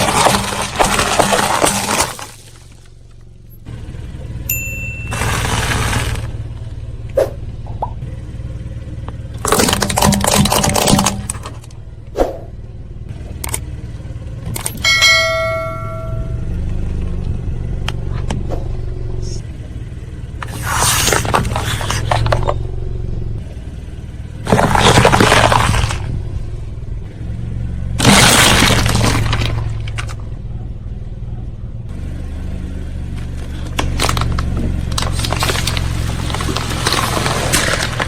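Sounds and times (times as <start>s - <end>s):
tyre crushing brittle objects: 0.0s - 3.0s, 5.1s - 6.4s, 9.4s - 11.7s, 20.4s - 22.6s, 24.4s - 26.1s, 28.0s - 30.2s, 33.2s - 38.0s
car engine idling: 0.0s - 38.0s.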